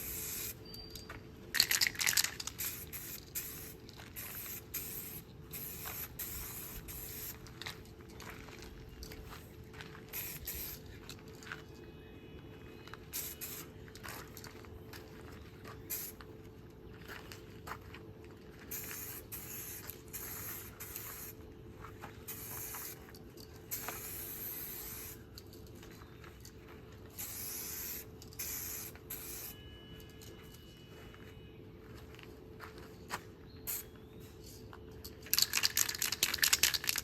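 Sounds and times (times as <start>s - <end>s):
spray paint can hissing: 0.0s - 0.6s, 1.5s - 7.4s, 10.1s - 10.8s, 13.1s - 13.7s, 15.9s - 16.2s, 18.7s - 21.4s, 22.3s - 23.0s, 23.7s - 25.2s, 27.1s - 29.5s, 35.3s - 37.0s.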